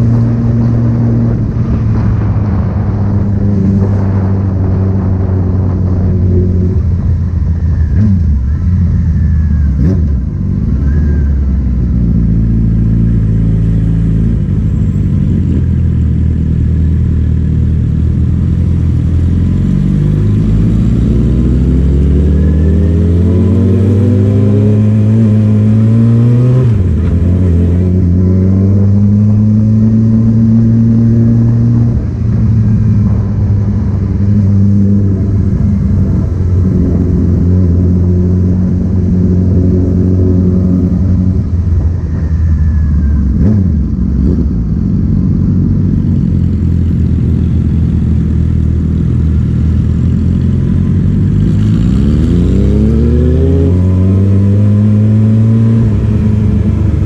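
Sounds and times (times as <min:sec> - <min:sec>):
vehicle engine accelerating: 0:00.0 - 0:57.0.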